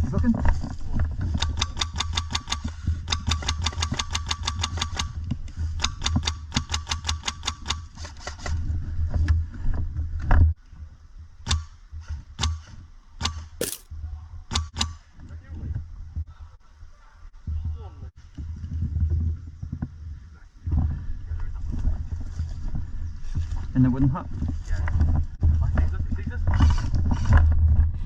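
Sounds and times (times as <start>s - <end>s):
airsoft rifle firing: 13.6s - 13.8s.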